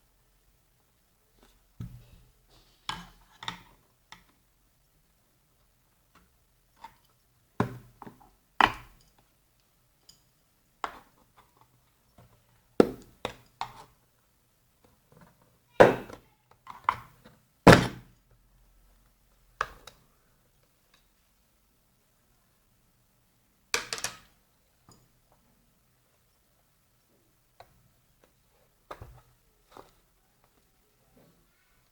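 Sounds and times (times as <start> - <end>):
hard objects knocking and clunking: 16.8 - 18.1.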